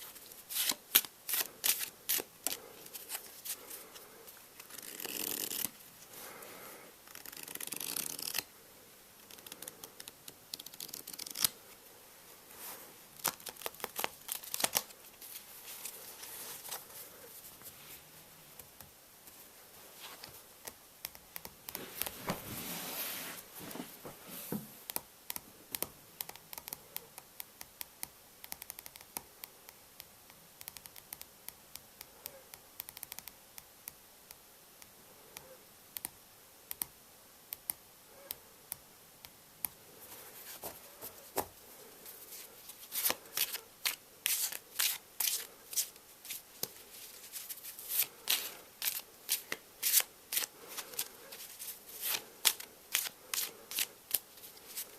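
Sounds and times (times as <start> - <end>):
playing cards rustling: 0.0 - 5.8, 7.1 - 8.5, 9.3 - 11.6, 12.6 - 18.0, 40.0 - 54.9
cards shuffling: 0.1 - 3.8, 4.6 - 5.8, 7.1 - 8.5, 9.3 - 11.6, 13.2 - 16.9, 42.1 - 54.9
playing cards clicking: 47.9 - 54.2.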